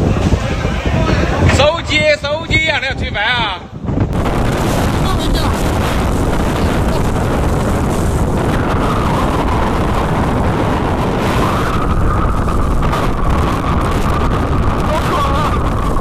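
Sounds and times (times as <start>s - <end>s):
storm wind buffeting microphone: 0.0s - 16.0s.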